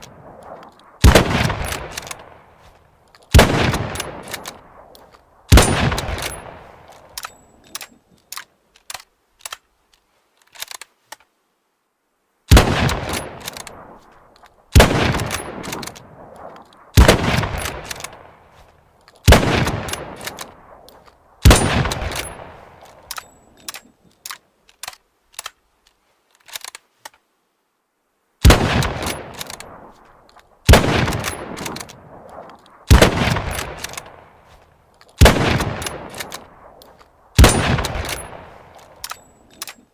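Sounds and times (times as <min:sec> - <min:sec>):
rifle shots with echo: 0:00.0 - 0:02.7, 0:03.3 - 0:07.4, 0:12.5 - 0:14.1, 0:14.7 - 0:18.6, 0:19.2 - 0:23.4, 0:28.4 - 0:30.0, 0:30.6 - 0:34.6, 0:35.2 - 0:39.6
rifle bolt clicks: 0:00.0 - 0:11.3, 0:12.5 - 0:27.2, 0:28.8 - 0:39.9.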